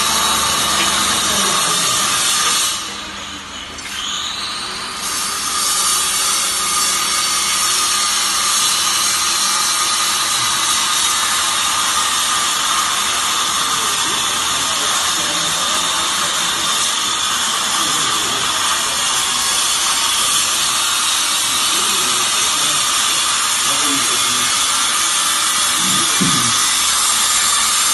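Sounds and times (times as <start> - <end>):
baler machine hissing: 0.0 - 3.8, 23.6 - 27.9.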